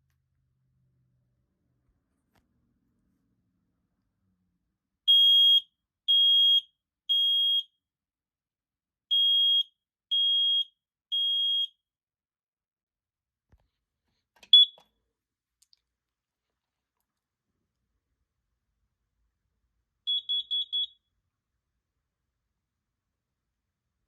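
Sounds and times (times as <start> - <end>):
smoke alarm beeping: 5.1 - 7.8, 9.1 - 11.9, 14.5 - 14.9, 20.0 - 21.1.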